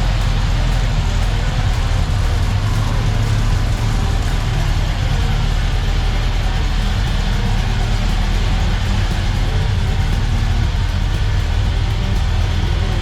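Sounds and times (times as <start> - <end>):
race car engine idling: 0.0 - 13.0.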